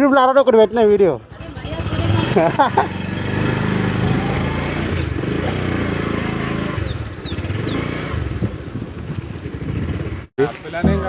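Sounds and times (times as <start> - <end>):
motorcycle engine running: 1.2 - 10.3.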